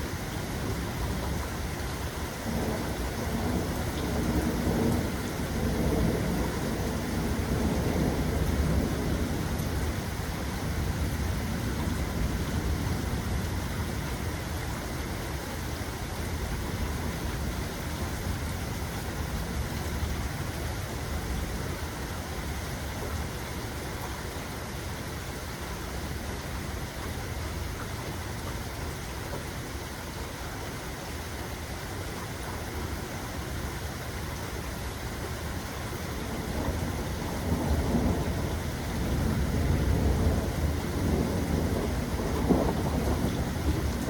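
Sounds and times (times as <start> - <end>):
steady rain: 0.0 - 44.0
rolling thunder: 2.4 - 14.0, 36.2 - 44.0.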